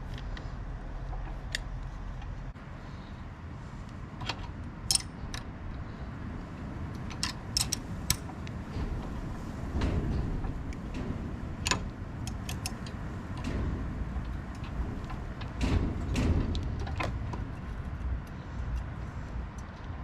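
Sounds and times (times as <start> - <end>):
low handling rumble: 0.0 - 20.0
wrench clicking on a bolt: 4.2 - 5.5, 7.0 - 8.3, 10.7 - 18.9.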